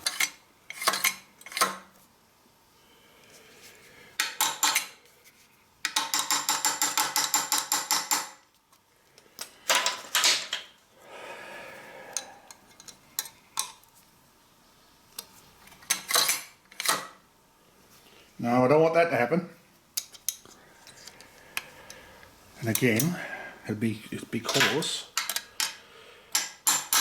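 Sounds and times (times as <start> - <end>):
hand tools clinking on metal: 24.4 - 27.0.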